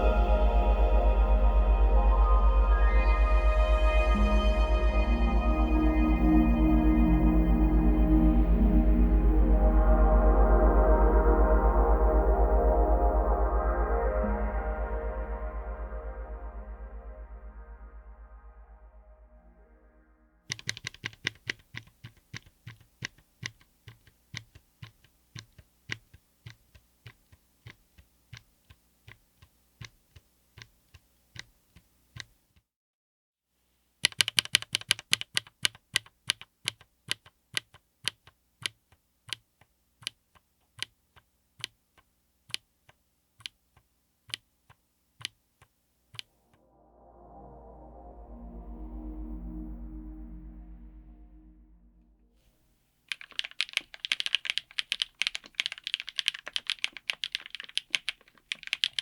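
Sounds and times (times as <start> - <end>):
background music: 0.0 - 20.2, 46.6 - 52.4
mechanical keyboard typing: 20.5 - 32.4, 34.0 - 45.4, 53.1 - 59.0.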